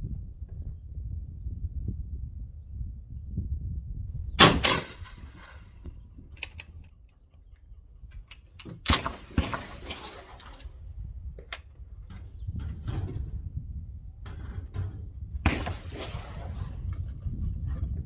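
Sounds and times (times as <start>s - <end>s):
shotgun action clacking: 4.4s - 5.6s, 6.4s - 6.8s.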